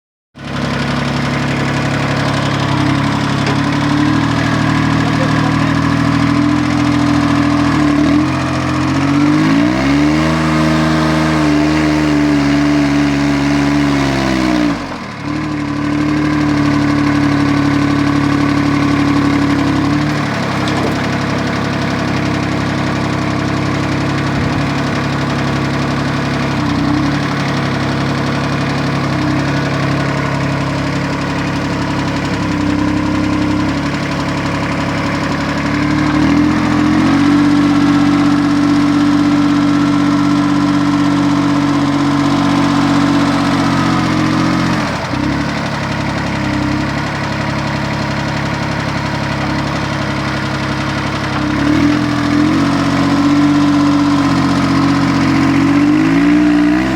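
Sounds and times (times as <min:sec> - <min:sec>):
tractor diesel engine running: 0:00.4 - 0:56.9.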